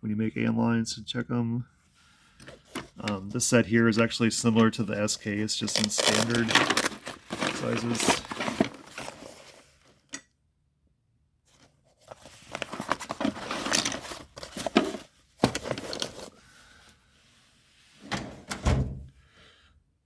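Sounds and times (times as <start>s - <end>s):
tools rattling in metal drawer: 5.6s - 9.5s, 12.6s - 16.3s
drawer bumping shut: 18.0s - 19.1s.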